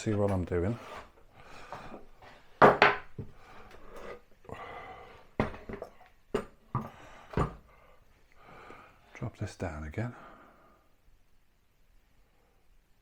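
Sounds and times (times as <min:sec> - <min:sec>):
cabinet scraping: 0:00.0 - 0:04.3
wooden cabinet bump: 0:02.6 - 0:03.3, 0:05.4 - 0:07.6.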